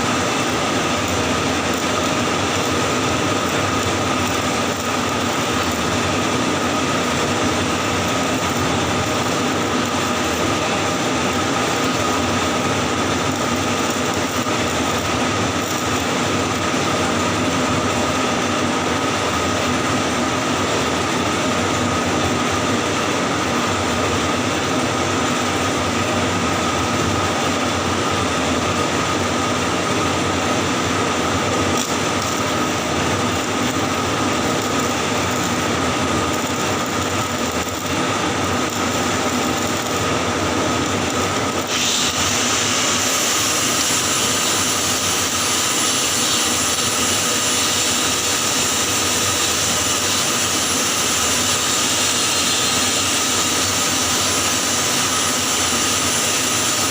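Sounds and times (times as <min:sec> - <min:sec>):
welding arc buzzing: 0:00.0 - 0:56.9
bright hiss: 0:41.5 - 0:56.9.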